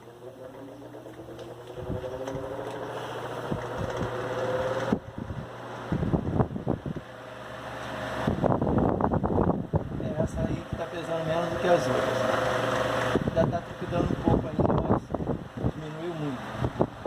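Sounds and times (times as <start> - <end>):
electric fan humming: 0.0 - 17.0
fan rattling and knocking: 0.0 - 17.0.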